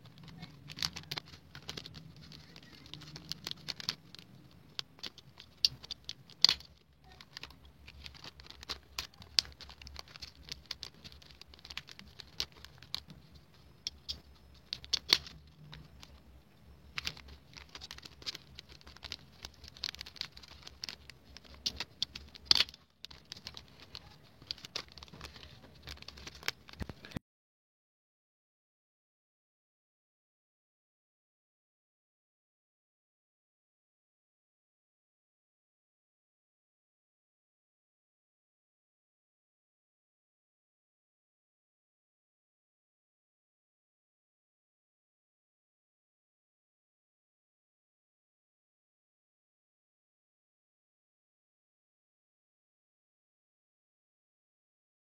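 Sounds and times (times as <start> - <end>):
plastic packaging crinkling: 0.0 - 16.2, 16.8 - 27.2.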